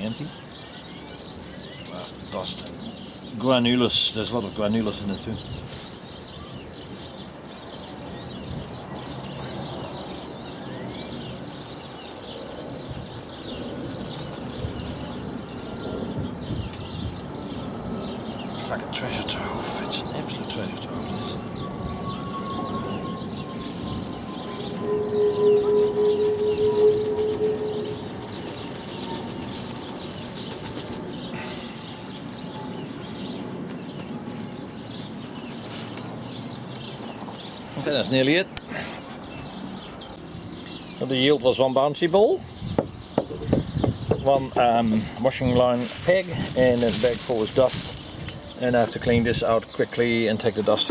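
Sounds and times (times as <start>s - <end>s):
small birds chirping: 0.0s - 50.9s
low rumbling noise: 13.8s - 30.4s.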